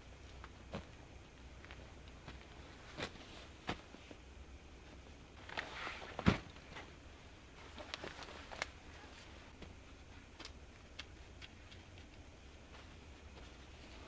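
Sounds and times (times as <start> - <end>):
rustle: 5.4 - 6.9.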